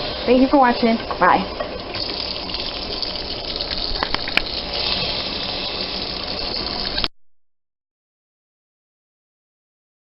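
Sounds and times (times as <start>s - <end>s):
water running from a tap: 0.0s - 7.1s.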